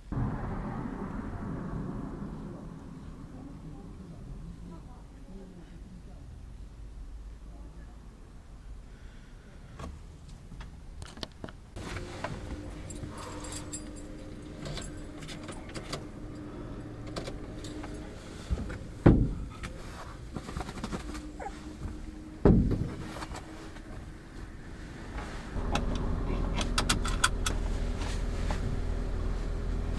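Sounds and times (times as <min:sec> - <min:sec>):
steady low hum: 0:00.0 - 0:07.8, 0:11.8 - 0:29.9
heavy thumps: 0:11.8 - 0:24.4
keys jangling: 0:12.6 - 0:16.0.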